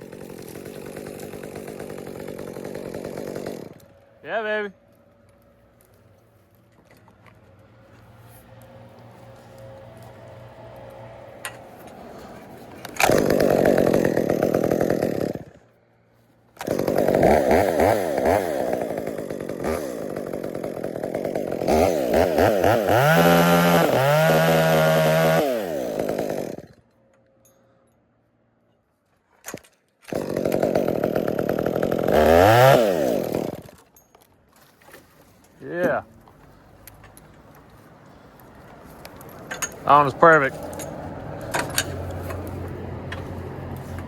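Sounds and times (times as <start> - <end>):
chainsaw cutting wood: 0.0 - 4.6, 10.7 - 15.7, 16.6 - 26.9, 29.5 - 33.9.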